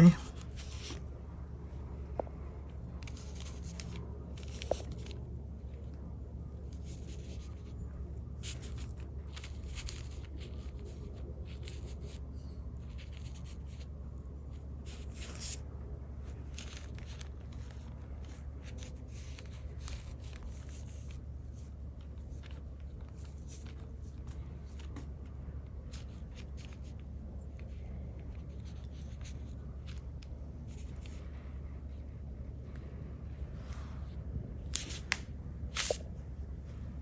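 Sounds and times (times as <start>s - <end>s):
steady low hum: 0.0s - 37.0s
brush swishing on paper: 35.7s - 36.1s.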